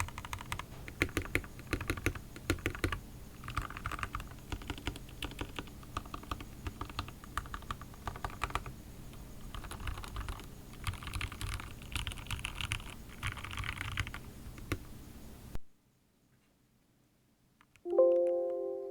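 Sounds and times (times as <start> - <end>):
typing on mechanical keyboard: 0.0 - 8.7, 9.5 - 14.9.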